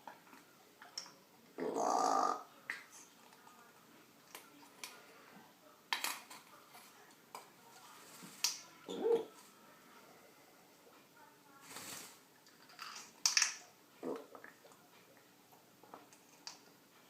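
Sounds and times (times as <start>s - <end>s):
parrot burping: 1.6s - 2.5s.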